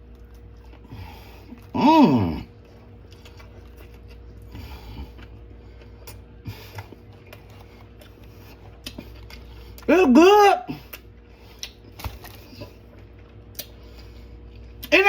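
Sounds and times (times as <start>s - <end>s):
steady low hum: 0.0s - 15.0s
chewing mouth clicks: 10.9s - 13.8s.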